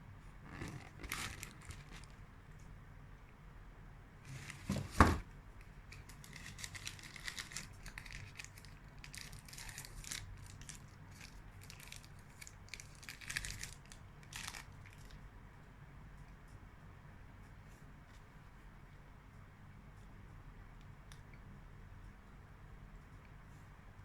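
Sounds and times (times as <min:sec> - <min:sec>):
wrapper crinkling and tearing: 0:00.5 - 0:02.2, 0:04.3 - 0:04.9, 0:05.9 - 0:15.1.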